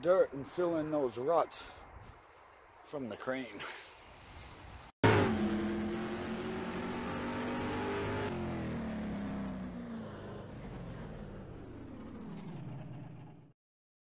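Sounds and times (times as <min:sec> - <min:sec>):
engine running and slowing: 0:05.0 - 0:13.6.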